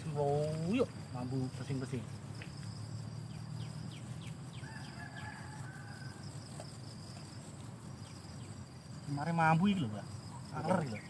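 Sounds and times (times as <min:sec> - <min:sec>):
high-pitched insect drone: 0:00.0 - 0:11.0
rooster crowing: 0:04.5 - 0:06.6.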